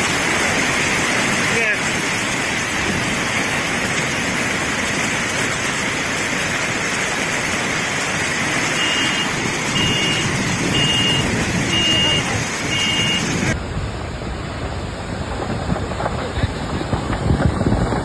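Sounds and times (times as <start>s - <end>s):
floodwater rushing: 0.0s - 18.0s
high electronic beeps: 8.8s - 13.4s.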